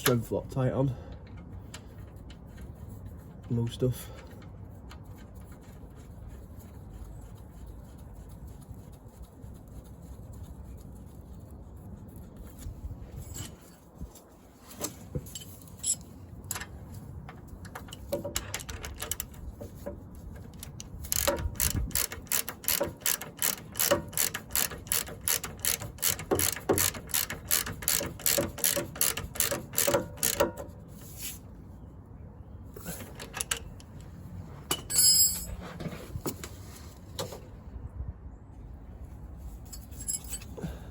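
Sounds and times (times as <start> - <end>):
socket ratchet clicking: 20.5 - 30.8, 33.0 - 33.9.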